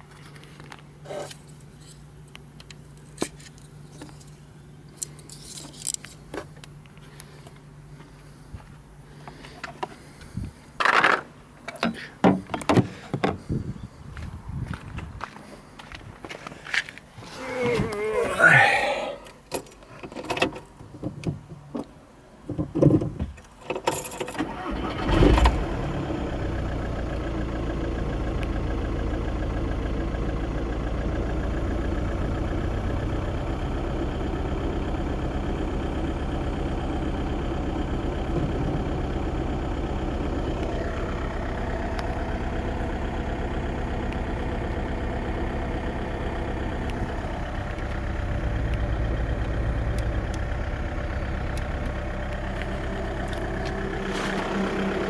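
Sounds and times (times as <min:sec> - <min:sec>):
diesel engine idling: 0:24.4 - 0:55.0.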